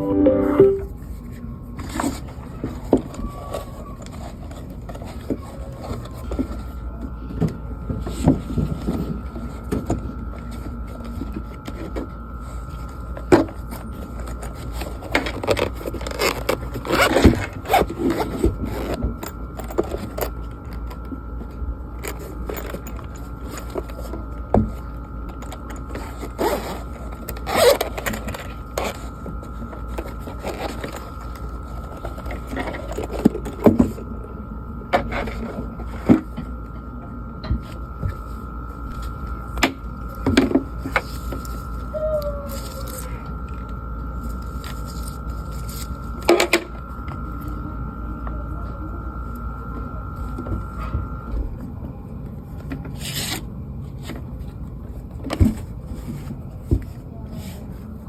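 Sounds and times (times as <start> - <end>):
faint high tone: 0.0 - 1.1
steady low hum: 6.3 - 58.0.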